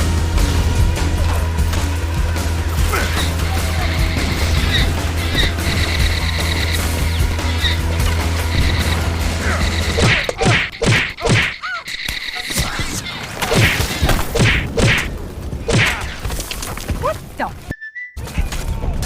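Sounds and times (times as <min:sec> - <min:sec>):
background music: 0:00.0 - 0:11.5
cartoon whacks and thuds: 0:10.0 - 0:11.6, 0:13.4 - 0:15.1, 0:15.7 - 0:16.1.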